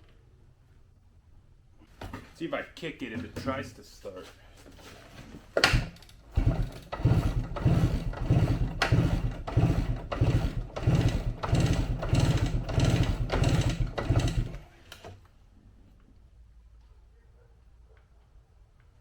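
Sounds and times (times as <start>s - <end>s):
two-stroke engine running unevenly: 6.4s - 14.6s.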